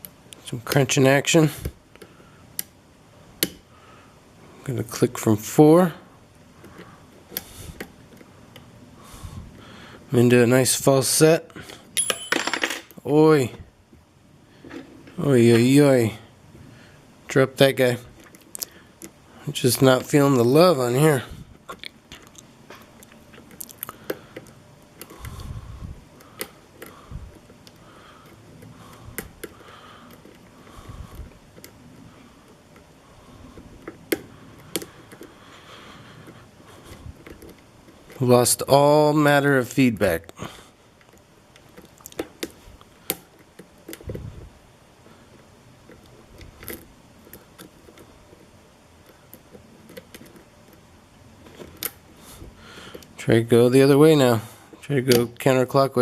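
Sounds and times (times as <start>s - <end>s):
lock pick clicking and scraping: 26.3s - 30.6s, 33.8s - 35.3s, 36.2s - 38.2s, 45.8s - 50.8s.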